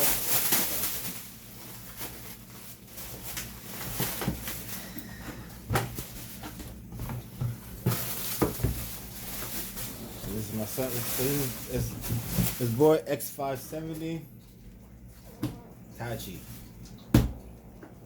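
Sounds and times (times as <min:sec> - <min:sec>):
packaging rustling: 0:00.0 - 0:13.0.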